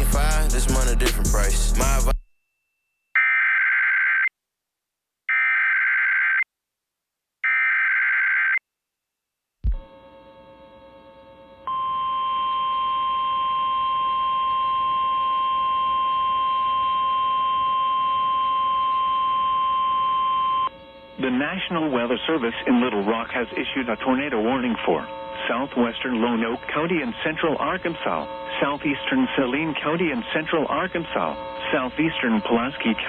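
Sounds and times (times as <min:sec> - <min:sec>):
faint hum: 0:09.7 - 0:33.0
steady high alarm tone: 0:10.5 - 0:33.0
warbling data tones: 0:11.7 - 0:33.0.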